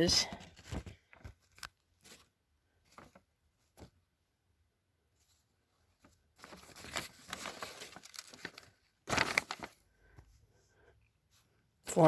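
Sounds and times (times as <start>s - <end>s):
paper crinkling and rustling: 0.2s - 4.0s, 5.2s - 10.0s.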